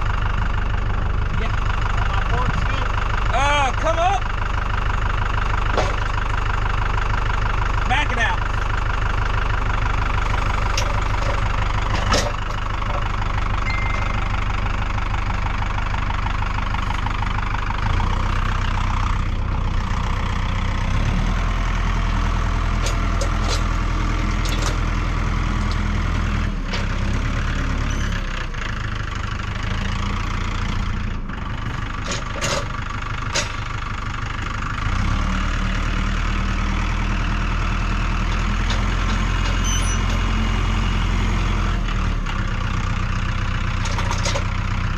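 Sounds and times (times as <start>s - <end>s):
engine idling: 0.0s - 44.9s
sharp metallic clanks: 10.7s - 14.3s.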